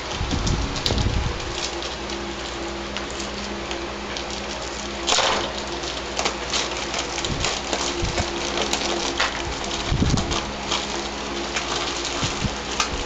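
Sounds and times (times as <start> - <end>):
faint hum: 0.0 - 13.0
plastic cans clicking and crackling: 0.8 - 13.0
scraping tearing sound: 3.0 - 13.0.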